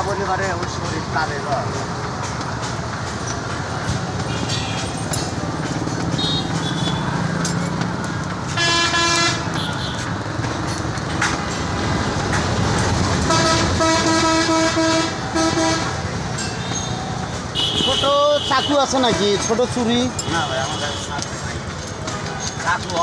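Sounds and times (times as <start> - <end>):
street traffic rumble: 0.0 - 23.0
vehicle horn honking: 6.2 - 7.2, 8.6 - 10.1, 13.3 - 16.0, 17.5 - 19.0, 20.2 - 21.2.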